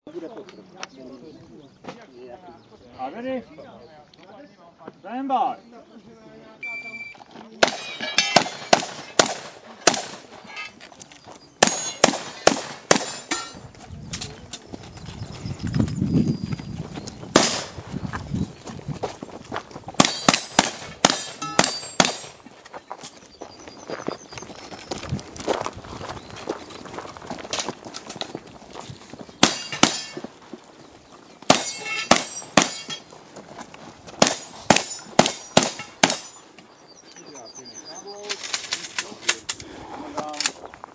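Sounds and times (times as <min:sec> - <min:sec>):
shotgun shots: 0:07.6 - 0:10.4, 0:11.6 - 0:13.5, 0:17.3 - 0:17.8, 0:20.0 - 0:22.4, 0:29.4 - 0:30.2, 0:31.5 - 0:33.0, 0:34.2 - 0:36.4
metallic ringing: 0:07.8 - 0:08.7, 0:11.6 - 0:12.0, 0:13.1 - 0:13.6, 0:21.3 - 0:22.4, 0:31.6 - 0:33.0.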